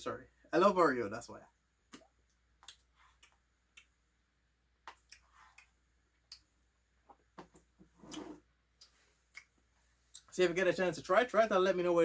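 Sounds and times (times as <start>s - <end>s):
eating clicks and smacks: 1.9s - 4.0s, 4.8s - 7.2s.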